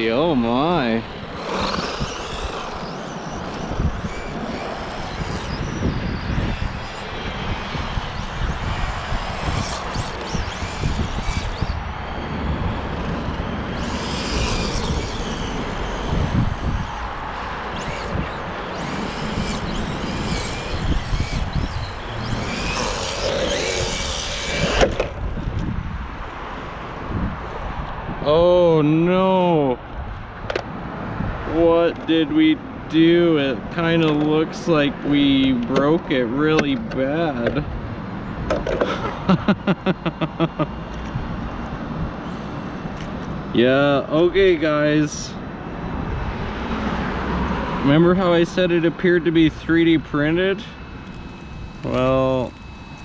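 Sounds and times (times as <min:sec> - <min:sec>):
tyre noise: 0:00.0 - 0:25.2
electric motor high whine: 0:00.0 - 0:28.1, 0:37.2 - 0:44.8, 0:45.4 - 0:53.0
rough noisy rumble: 0:00.0 - 0:53.0
toy truck knocking curb: 0:38.5 - 0:39.1.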